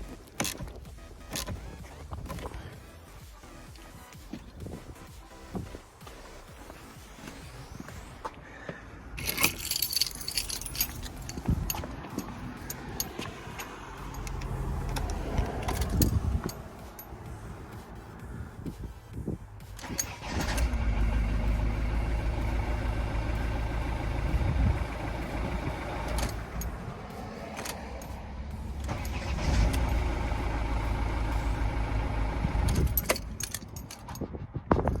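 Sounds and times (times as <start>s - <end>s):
diesel engine starting and running: 0.0s - 34.7s
sharp clicks: 10.9s - 17.1s.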